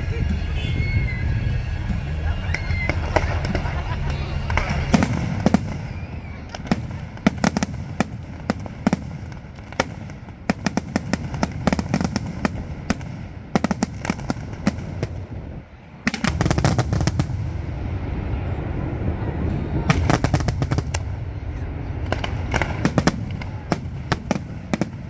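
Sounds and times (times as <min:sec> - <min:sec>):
low rumble: 0:00.0 - 0:10.5, 0:16.3 - 0:25.0
fireworks cracks and bangs: 0:00.0 - 0:25.0.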